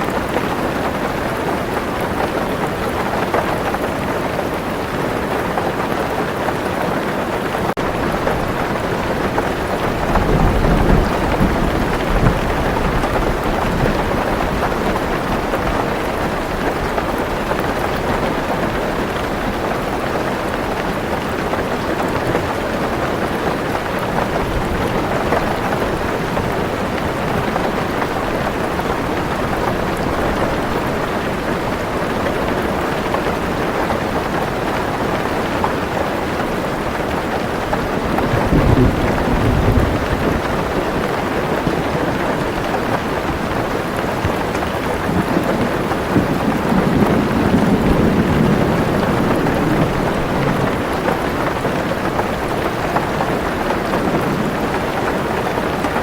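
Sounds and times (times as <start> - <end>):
heavy rain on a car roof: 0.0 - 56.0
thunder rumble: 7.8 - 19.6, 23.5 - 34.1, 37.6 - 55.9.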